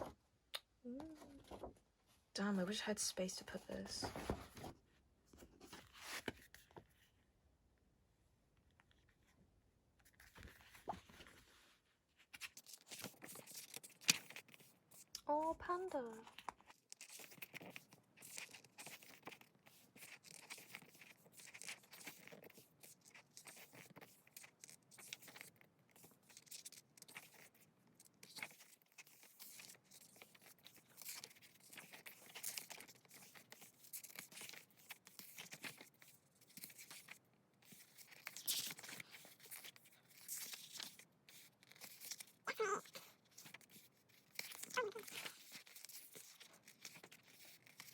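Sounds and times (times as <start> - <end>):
paper and plastic rustling: 1.1 - 1.8, 2.8 - 7.1, 10.0 - 47.9.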